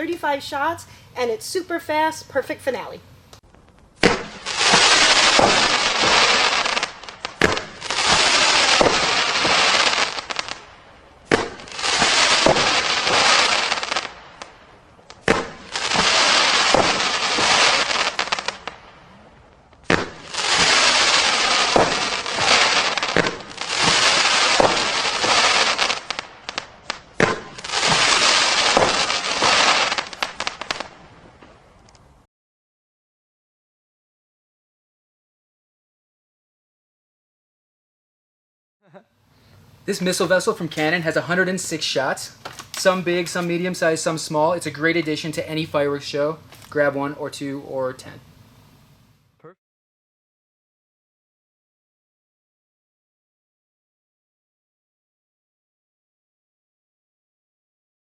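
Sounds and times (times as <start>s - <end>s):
firework crackling: 3.4s - 31.5s, 39.8s - 48.1s
firework launch reports: 4.0s - 10.6s, 11.3s - 14.5s, 15.2s - 18.8s, 19.9s - 26.6s, 27.2s - 30.9s, 39.9s - 48.2s.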